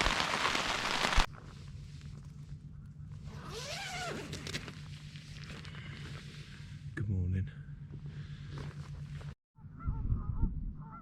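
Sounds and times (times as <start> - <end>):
rain pattering on a tent: 0.0 - 1.3
low hum: 0.0 - 11.0.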